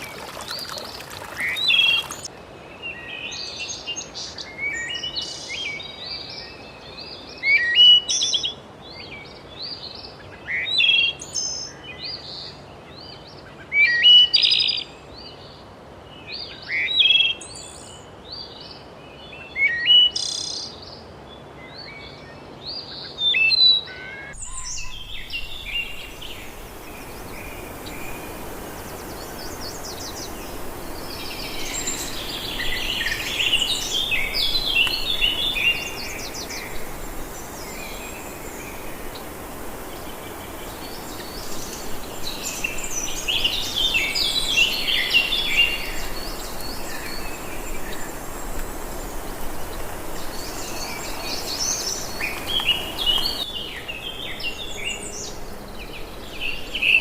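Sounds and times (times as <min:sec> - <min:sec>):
chorus of birds calling: 0:00.0 - 0:02.3, 0:23.9 - 0:57.0
single bird singing: 0:00.0 - 0:05.8, 0:23.8 - 0:57.0
background hiss: 0:00.0 - 0:08.4, 0:24.4 - 0:57.0.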